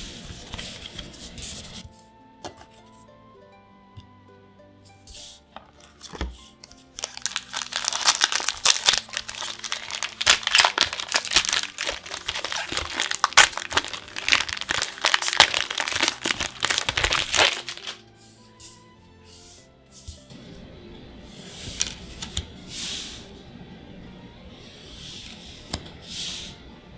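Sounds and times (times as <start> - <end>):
foil wrapper crinkling: 7.0 - 18.0.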